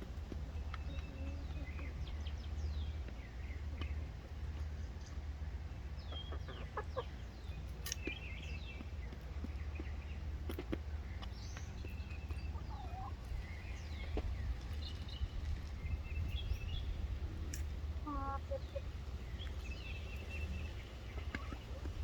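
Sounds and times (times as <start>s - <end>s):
chickens clucking: 0.0s - 22.0s
steady low rumble: 7.0s - 22.0s.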